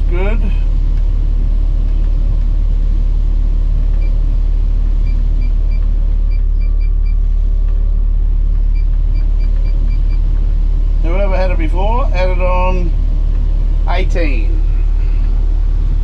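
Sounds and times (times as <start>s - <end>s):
excavator engine hum: 0.0s - 16.0s.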